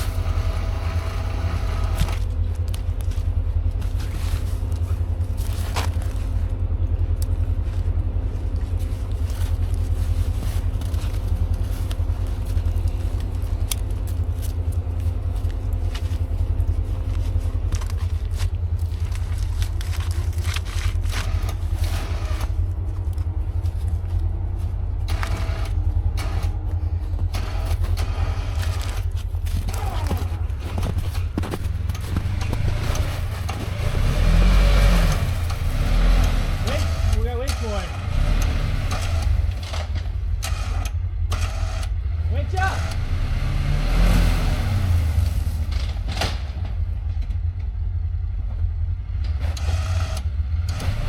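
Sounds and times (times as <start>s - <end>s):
engine humming: 0.0s - 51.0s
heavy low rumble: 0.0s - 51.0s
scrapes and knocks: 26.2s - 37.2s.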